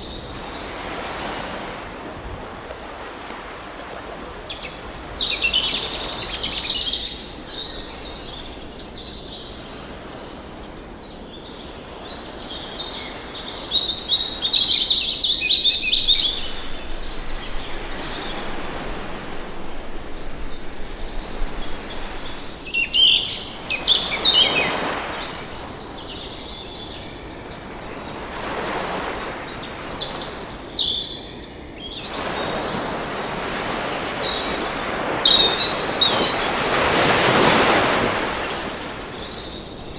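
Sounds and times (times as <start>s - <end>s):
ocean surf: 0.0s - 39.9s
birds chirping and singing: 5.3s - 32.4s.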